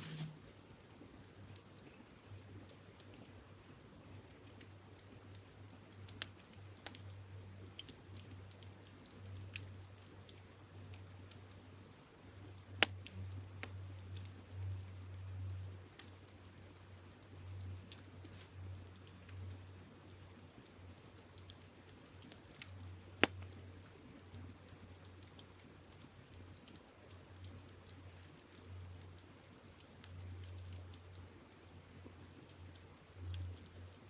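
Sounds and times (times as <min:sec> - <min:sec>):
campfire crackling: 0:00.0 - 0:34.0.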